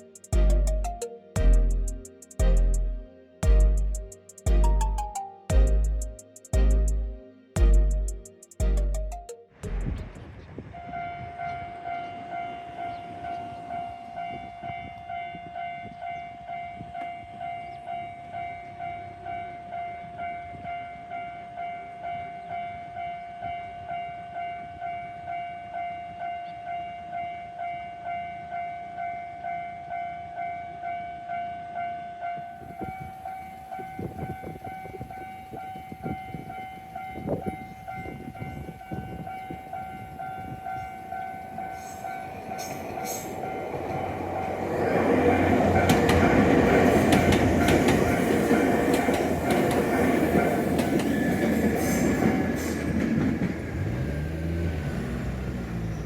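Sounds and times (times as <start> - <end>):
level crossing warning bell: 0.0 - 2.8, 10.8 - 52.6
train wheels clattering over rail joints: 44.9 - 54.2.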